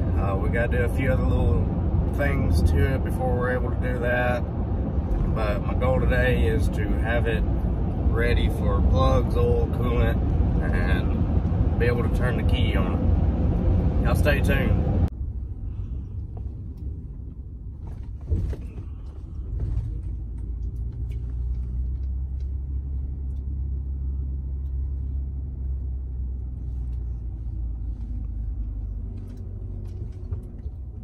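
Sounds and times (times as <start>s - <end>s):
car engine rumbling: 0.0s - 31.0s.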